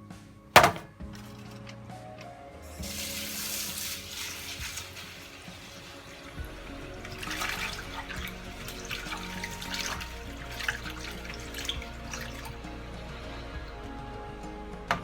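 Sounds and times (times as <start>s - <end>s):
background music: 0.0s - 15.0s
water running in a sink: 2.6s - 13.8s.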